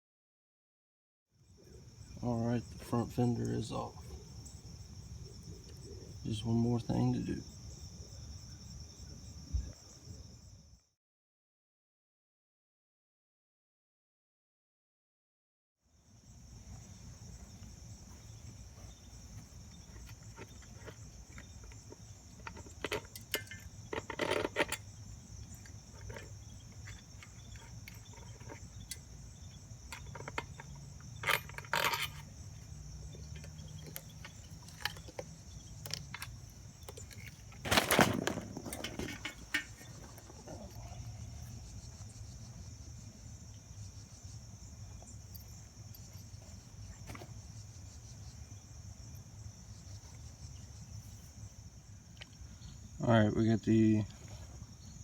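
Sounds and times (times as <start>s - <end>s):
crickets chirring: 1.3s - 10.9s, 15.9s - 55.0s
metal hand tools clinking: 20.4s - 29.1s, 29.9s - 32.4s.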